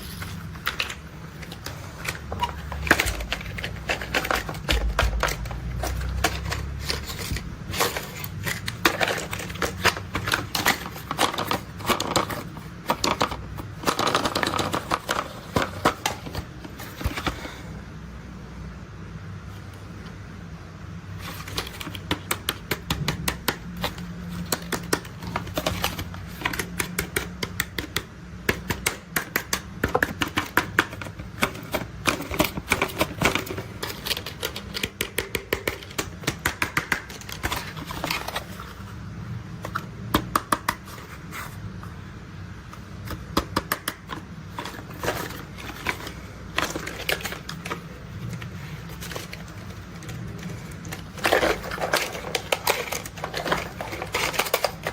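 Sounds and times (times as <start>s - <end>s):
plastic toys clicking and rattling: 0.0s - 17.5s, 21.1s - 38.9s, 43.0s - 54.9s
steady low hum: 0.0s - 27.2s.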